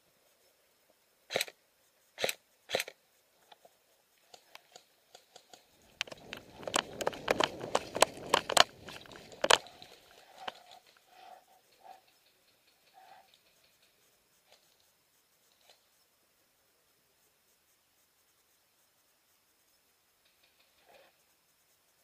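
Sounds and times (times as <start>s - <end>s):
sharp clicks: 1.3s - 14.9s
close crunching and rustling: 2.2s - 11.2s.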